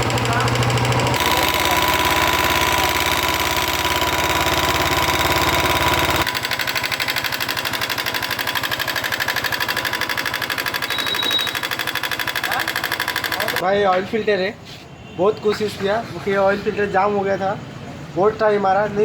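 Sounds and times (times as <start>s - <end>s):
motorcycle engine idling: 0.0s - 13.6s.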